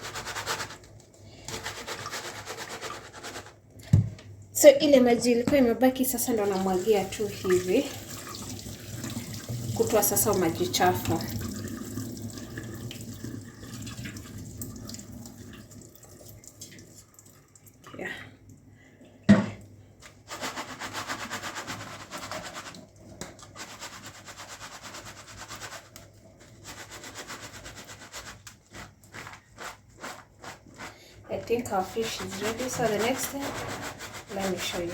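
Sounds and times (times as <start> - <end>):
water being poured: 6.4 - 17.8.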